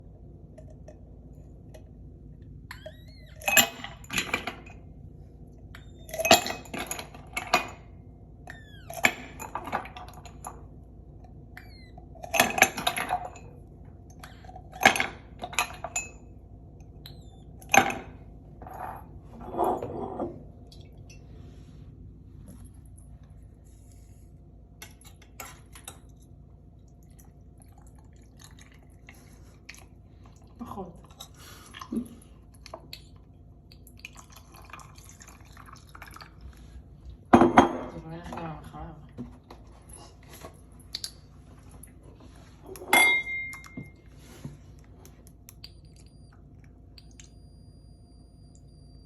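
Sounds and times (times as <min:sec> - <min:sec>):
cutlery and crockery clinking: 0:42.8 - 0:44.0.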